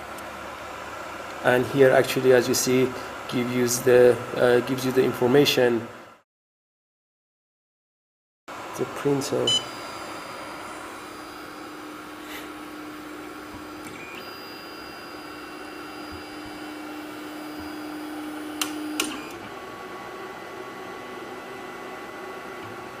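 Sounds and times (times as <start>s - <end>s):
printer motor hum: 8.5s - 23.0s
printer fan hiss: 9.0s - 19.5s.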